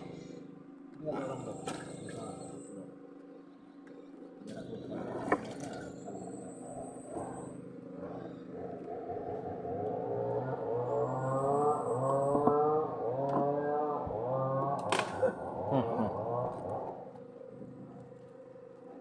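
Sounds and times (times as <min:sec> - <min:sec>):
motor engine revving: 0:04.8 - 0:18.3.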